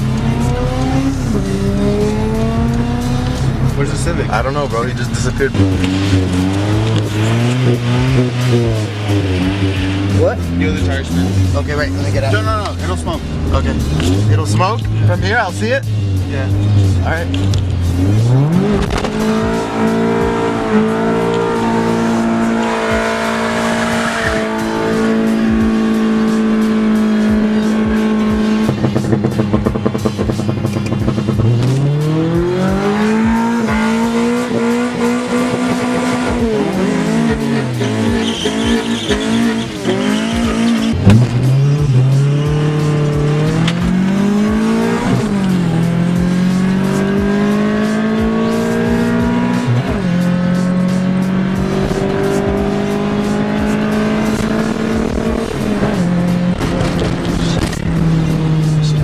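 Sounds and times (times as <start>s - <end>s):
car engine revving: 0.0s - 59.0s
tire squeal: 20.7s - 25.4s, 36.8s - 42.6s.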